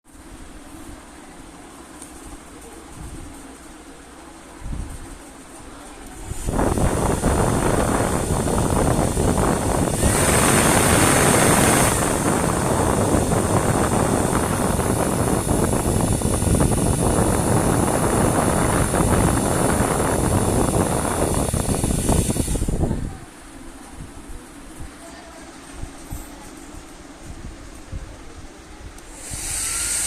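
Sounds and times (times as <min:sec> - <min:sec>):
hair dryer running: 0:06.3 - 0:22.9, 0:29.1 - 0:30.0.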